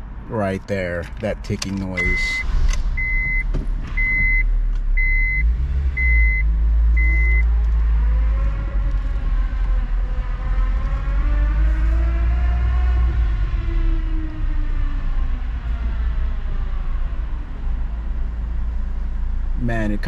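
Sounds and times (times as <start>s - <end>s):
car engine accelerating: 2.0s - 19.6s
high beeps: 3.0s - 7.4s.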